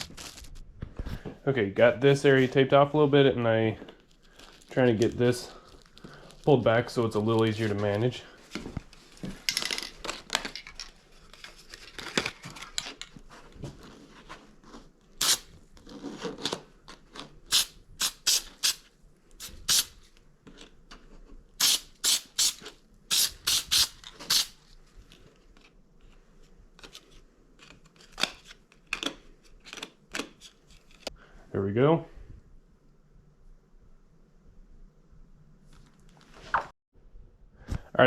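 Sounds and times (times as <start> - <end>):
aerosol spray hissing bursts: 17.5 - 18.8, 19.4 - 19.9, 21.6 - 24.6.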